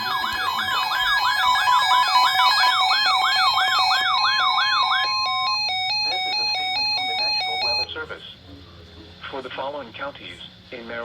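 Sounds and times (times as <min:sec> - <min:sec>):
electronic alert siren sweeping: 0:00.0 - 0:07.9
steady held tones: 0:00.0 - 0:07.9.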